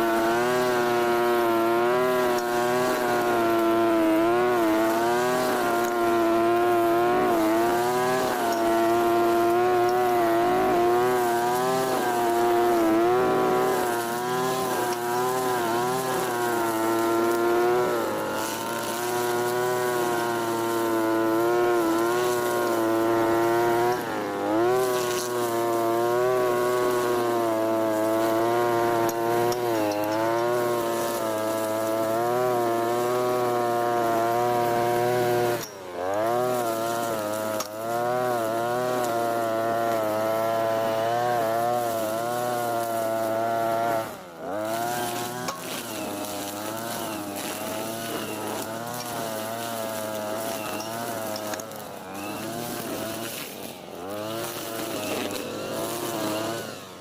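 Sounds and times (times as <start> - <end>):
brush cutter engine revving: 0.0 - 57.0.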